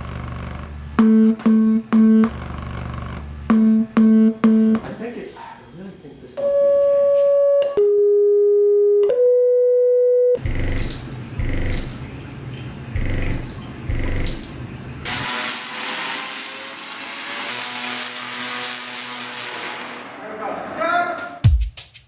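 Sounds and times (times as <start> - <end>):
pure test tone: 1.0 - 2.6, 3.5 - 4.9, 6.4 - 11.9, 13.0 - 14.4
low pulses: 13.0 - 14.4.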